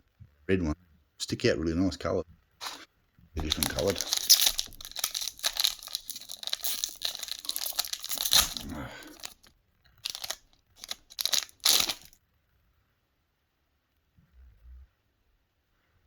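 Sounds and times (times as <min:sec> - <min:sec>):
foil wrapper crinkling: 0:03.4 - 0:12.2.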